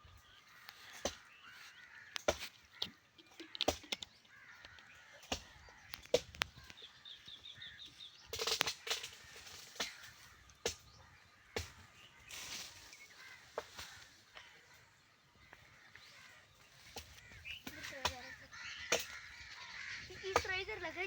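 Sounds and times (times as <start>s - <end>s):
birds calling: 0.0s - 21.0s
sharp clicks and knocks: 2.1s - 6.8s, 8.3s - 10.9s.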